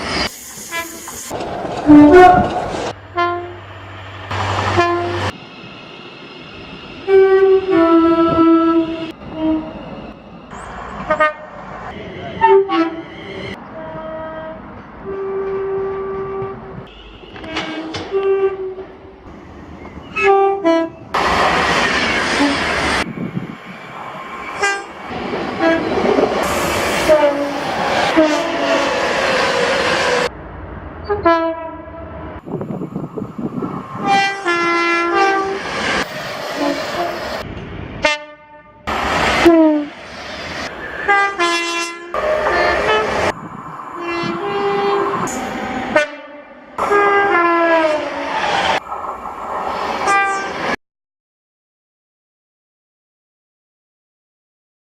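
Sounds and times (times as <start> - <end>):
passing trains rumbling: 0.0 - 50.8
train horn blasts: 1.8 - 2.5, 3.1 - 3.6, 4.6 - 5.4, 7.0 - 9.8, 11.0 - 11.6, 12.4 - 13.0, 13.6 - 19.0, 20.1 - 21.2, 24.6 - 25.0, 25.6 - 25.9, 27.0 - 28.9, 31.0 - 32.2, 34.0 - 35.6, 38.0 - 39.9, 41.1 - 43.4, 44.0 - 48.2, 50.0 - 50.7.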